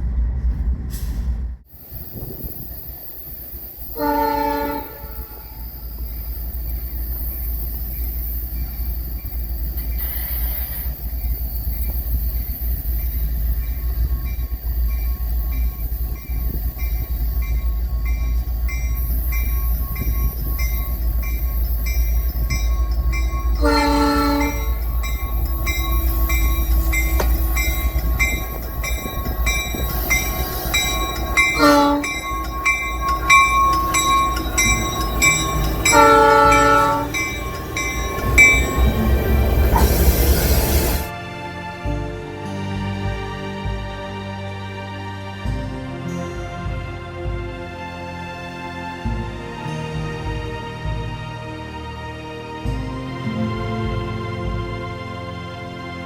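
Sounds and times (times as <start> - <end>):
freight train rumble: 0.0 - 56.0
pulsing high ringing: 1.7 - 41.1
locomotive horn blasts: 4.0 - 5.6, 23.2 - 40.0.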